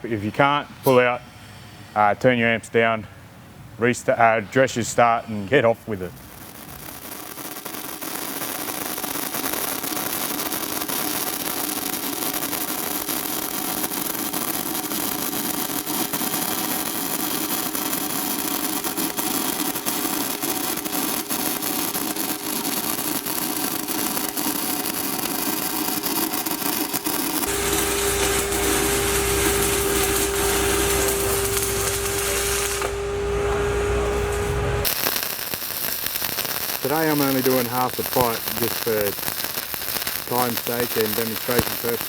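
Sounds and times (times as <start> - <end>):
welding arc crackling: 5.9 - 42.0
low hum: 27.4 - 34.9
held tone: 27.5 - 34.9.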